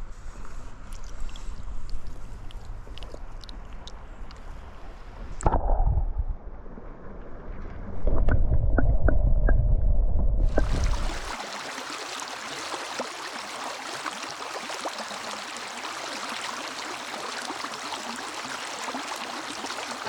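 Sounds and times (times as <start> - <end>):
wind buffeting microphone: 7.7 - 11.4
stream running over rocks: 10.5 - 20.0.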